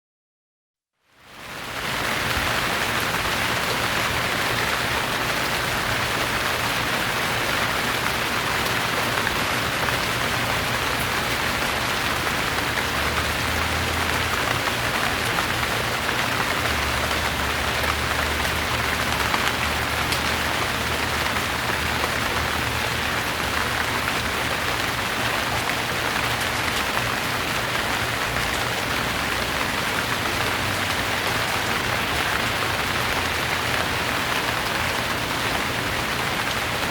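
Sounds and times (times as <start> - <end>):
steady rain patter: 1.0 - 36.9.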